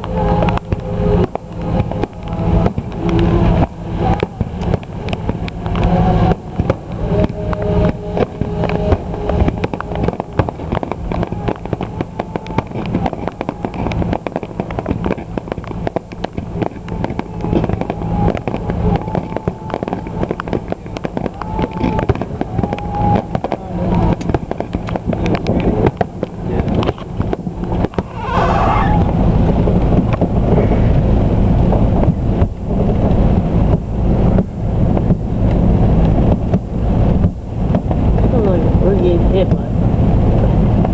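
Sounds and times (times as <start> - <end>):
fireworks crackling and popping: 0.0 - 40.9
low rumble: 0.0 - 40.9
firework hissing streak: 27.0 - 30.5.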